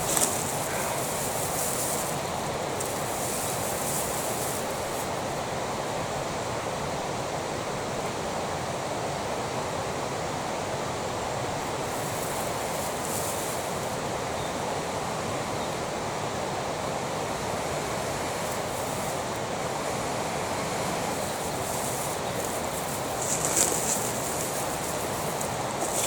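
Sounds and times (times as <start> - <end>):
short rustle: 0.0 - 5.3, 11.9 - 14.0, 21.1 - 26.0
river rushing: 0.0 - 26.0.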